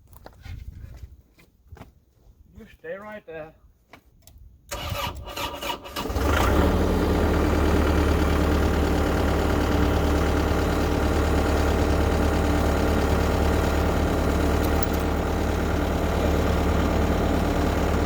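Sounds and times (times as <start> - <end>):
excavator diesel engine idling: 6.2 - 18.0.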